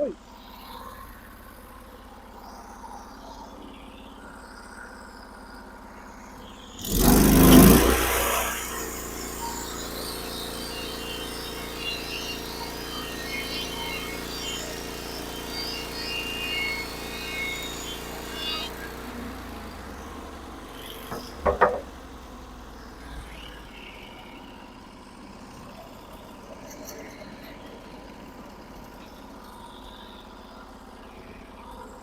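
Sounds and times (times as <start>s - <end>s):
sawmill engine running: 6.8s - 29.9s.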